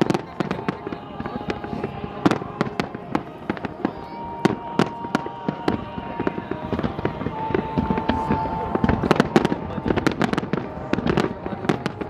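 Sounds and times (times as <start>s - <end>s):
fireworks bangs and cracks: 0.0s - 12.0s
steady high tone: 0.0s - 12.0s.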